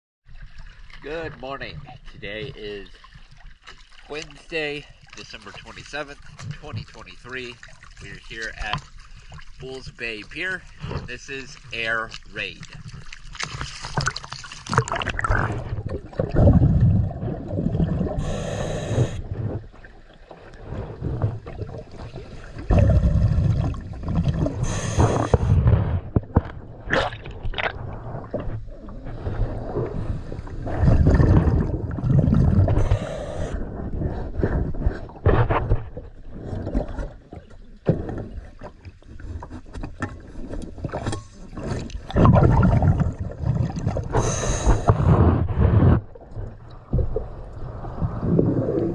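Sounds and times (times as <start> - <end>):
bubbling exhaled air: 12.4 - 35.3, 41.6 - 48.9
scuba regulator breathing: 18.0 - 19.6, 24.6 - 26.1, 32.6 - 35.2, 44.0 - 46.1
scratchy scraping on hull: 32.6 - 37.3, 44.1 - 46.4.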